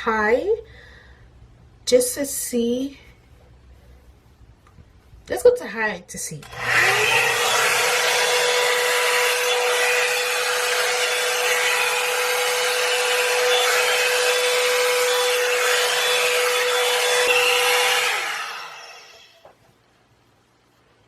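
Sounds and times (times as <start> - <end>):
hair dryer brush running: 6.4 - 19.5.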